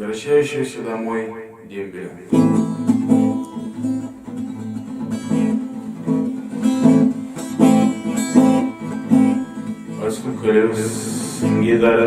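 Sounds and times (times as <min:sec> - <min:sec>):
acoustic guitar strumming: 0:00.0 - 0:12.0.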